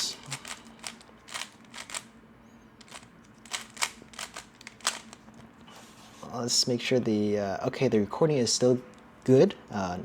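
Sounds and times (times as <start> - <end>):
puzzle cube plastic clicks: 0.0 - 2.1, 2.8 - 5.2.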